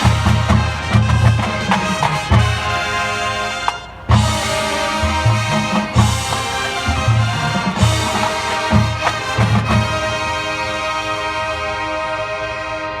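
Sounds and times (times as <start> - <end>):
marching band playing: 0.0 - 13.0.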